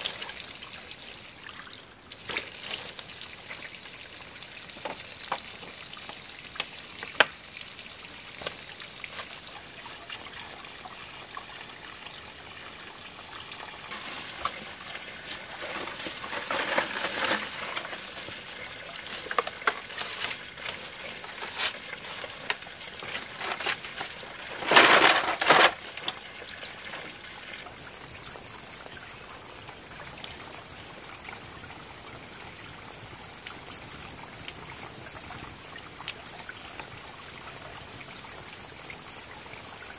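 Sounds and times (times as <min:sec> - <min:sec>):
water trickling and pouring: 0:00.0 - 0:39.9
water splashing: 0:13.9 - 0:25.9.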